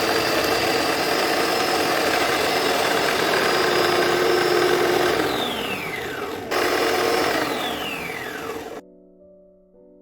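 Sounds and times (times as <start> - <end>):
electric blender running: 0.0 - 8.8.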